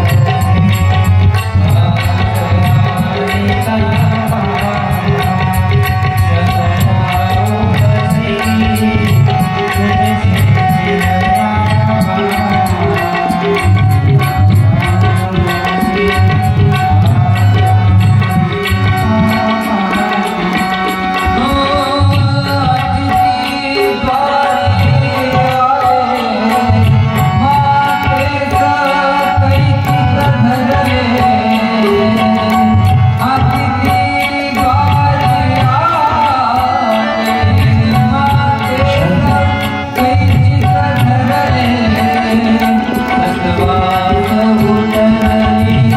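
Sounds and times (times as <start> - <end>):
devotional music with held melody: 0.0 - 45.9
high ticking beat: 0.0 - 45.9
man singing: 0.0 - 45.9
tabla drumming: 0.0 - 45.9.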